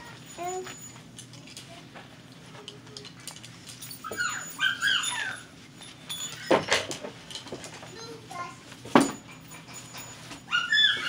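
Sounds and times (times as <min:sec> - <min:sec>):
dog whining: 0:03.9 - 0:05.6, 0:09.2 - 0:11.0.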